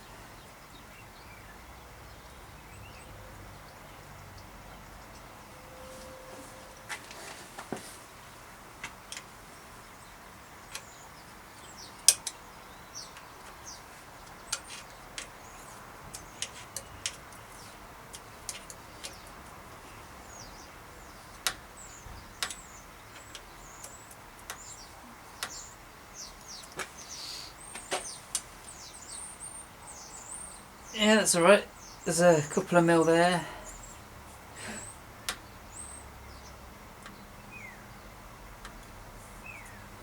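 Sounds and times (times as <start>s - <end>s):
small birds chirping: 0.0s - 40.0s
tools tapping on metal bike parts: 12.0s - 12.5s, 14.2s - 19.5s, 22.4s - 24.7s.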